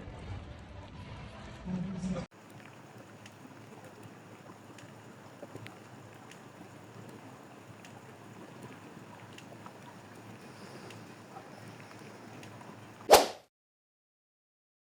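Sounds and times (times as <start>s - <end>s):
faint ticks: 2.3s - 13.1s
faint background hiss: 2.3s - 13.2s.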